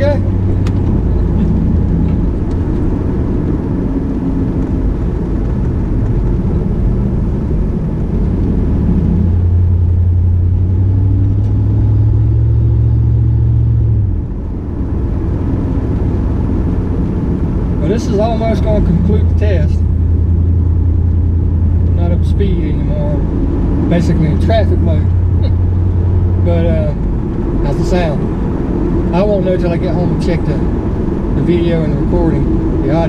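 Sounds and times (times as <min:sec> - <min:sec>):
car engine drone in cabin: 0:00.0 - 0:33.0
road noise: 0:00.0 - 0:33.0.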